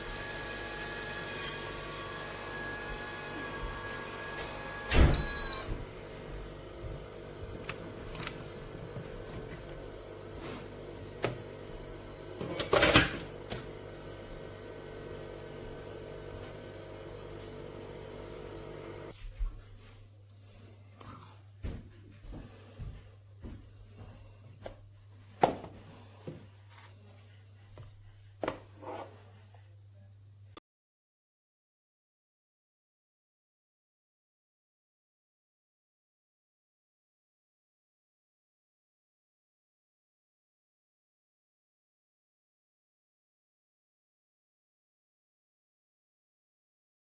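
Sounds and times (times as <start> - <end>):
low machine hum: 0.0 - 19.1.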